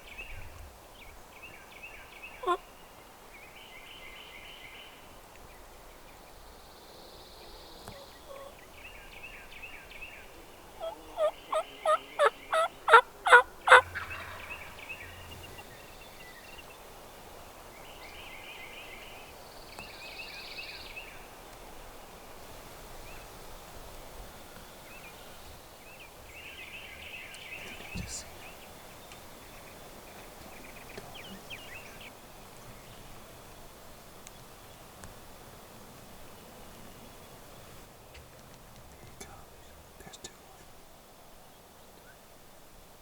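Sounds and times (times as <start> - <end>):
songbirds chirping: 0.0 - 43.0
wild turkey yelping: 7.9 - 8.6, 10.8 - 15.7.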